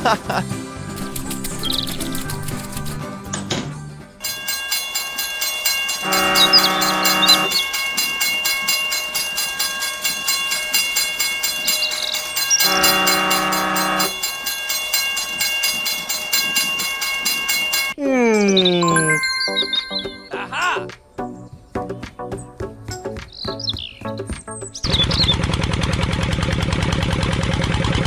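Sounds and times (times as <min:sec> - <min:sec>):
train horn blasts: 0:06.0 - 0:07.7, 0:12.5 - 0:14.2.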